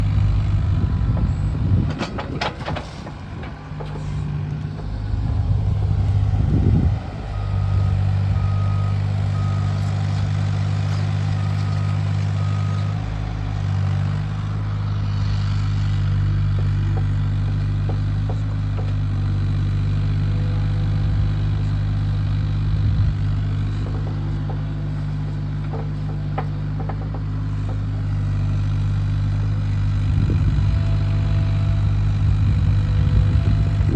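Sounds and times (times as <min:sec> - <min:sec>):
excavator diesel engine running: 0:00.0 - 0:33.9.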